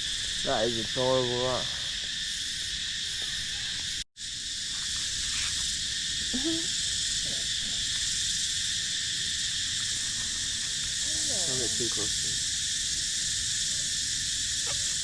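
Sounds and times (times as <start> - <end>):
tropical insects buzzing: 0.0 - 15.0.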